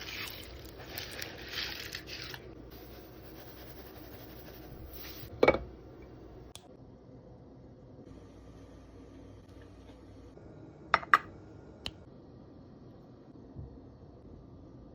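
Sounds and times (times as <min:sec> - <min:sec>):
rustling and scraping handling: 0:00.0 - 0:05.3.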